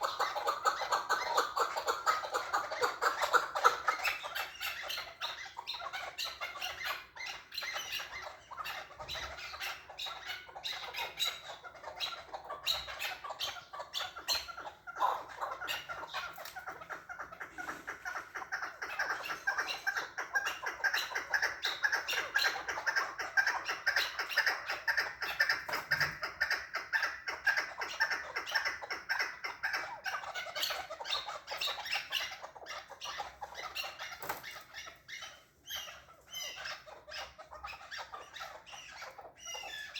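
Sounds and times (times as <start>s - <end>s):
partridge clucking call: 0.0s - 35.1s.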